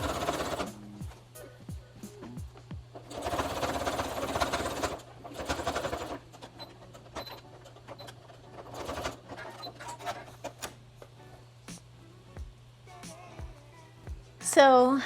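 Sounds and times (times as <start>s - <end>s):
sewing machine stitching: 0.0s - 0.7s, 3.0s - 10.7s.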